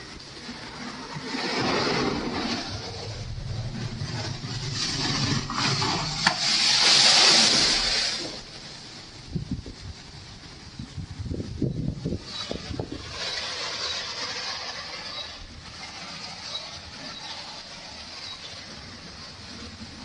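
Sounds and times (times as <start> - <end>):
strong wind gusts: 0.0 - 20.0.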